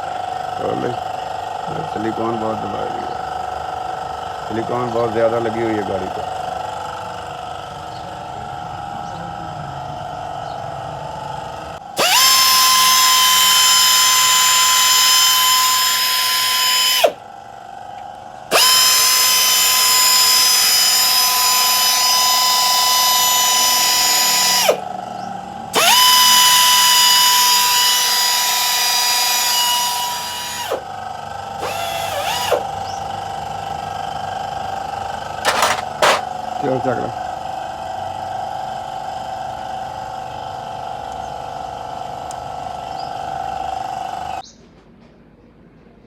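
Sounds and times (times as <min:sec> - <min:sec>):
electric power tool whining: 0:11.8 - 0:17.4, 0:18.0 - 0:33.5, 0:35.2 - 0:36.3.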